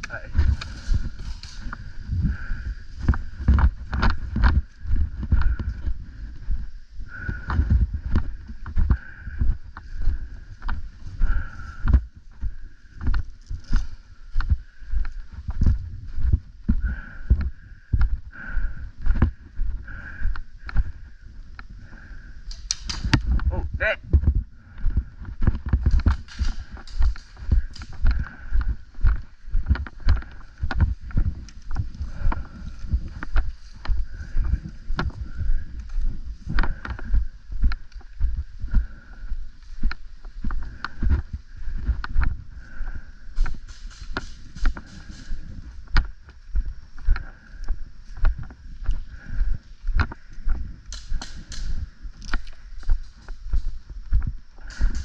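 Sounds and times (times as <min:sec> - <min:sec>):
heavy footsteps: 0:00.0 - 0:55.0
sharp clicks: 0:22.4 - 0:23.5, 0:50.0 - 0:53.4.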